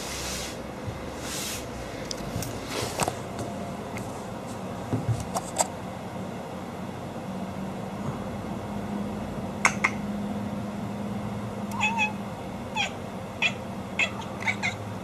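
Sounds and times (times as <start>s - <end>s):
steady low hum: 0.0s - 15.0s
cat making high calls: 11.8s - 14.8s.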